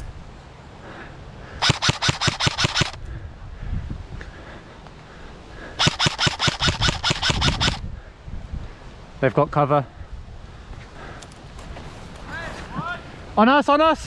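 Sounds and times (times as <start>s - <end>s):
airsoft gun rapid shots: 1.6s - 3.0s, 5.8s - 7.8s.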